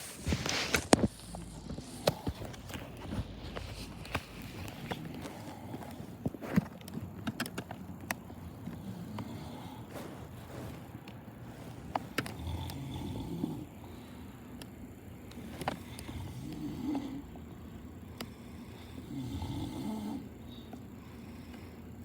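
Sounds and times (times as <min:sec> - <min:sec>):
sharp clicks and knocks: 0:00.4 - 0:09.3
man snoring: 0:00.7 - 0:06.7, 0:08.2 - 0:22.0.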